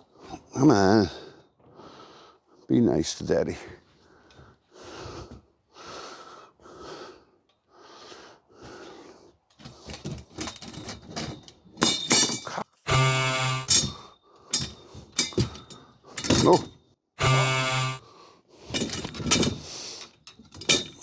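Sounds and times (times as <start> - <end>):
person breathing heavily: 0.1 - 2.6, 3.9 - 10.0, 18.0 - 18.8, 19.6 - 20.2
frame parts clicking and clattering: 9.5 - 16.8, 18.6 - 21.0
buzzing creak: 12.9 - 14.0, 17.2 - 18.0.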